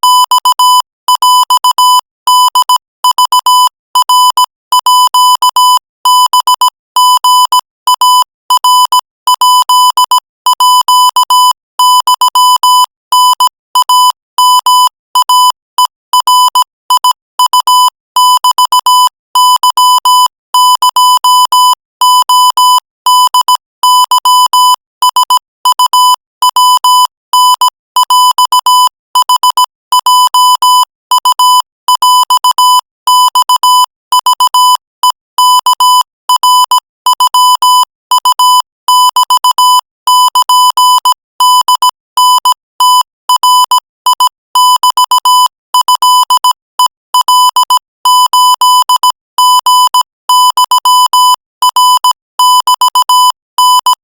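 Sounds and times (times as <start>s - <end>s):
morse code beeps: 0.0s - 54.0s.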